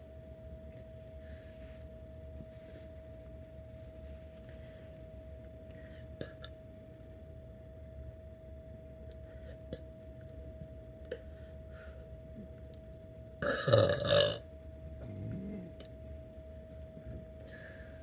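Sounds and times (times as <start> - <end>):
person burping loudly: 13.4 - 14.4.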